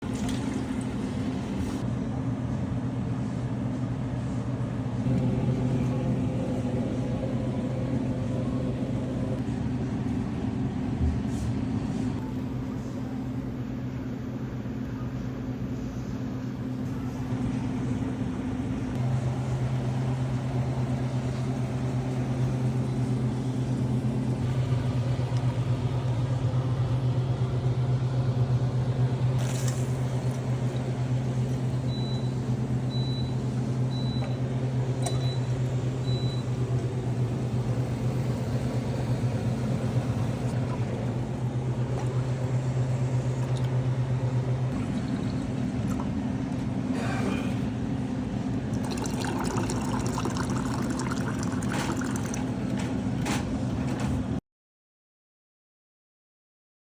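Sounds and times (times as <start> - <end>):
hot water dispenser humming: 0.0 - 1.8, 5.0 - 9.4, 17.3 - 53.8.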